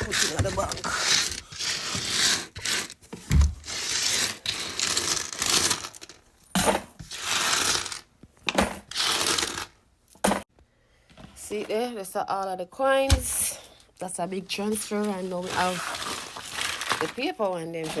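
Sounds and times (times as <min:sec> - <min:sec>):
coins clinking: 0:03.6 - 0:10.4.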